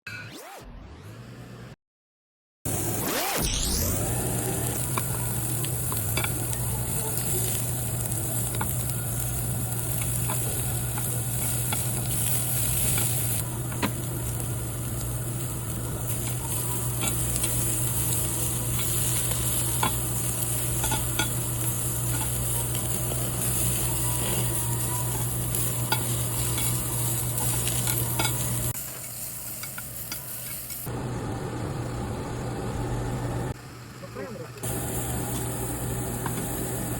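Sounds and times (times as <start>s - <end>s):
low hum: 2.7s - 28.8s, 30.9s - 33.6s
beef sizzling on a grill: 3.8s - 30.9s, 34.6s - 36.9s.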